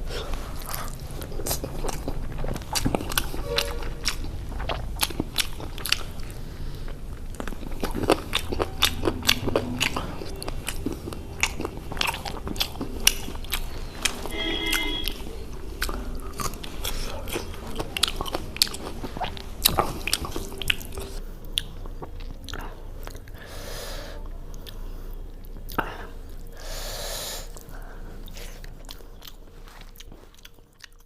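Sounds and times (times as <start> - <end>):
wet clicky chewing: 0.6 - 23.4.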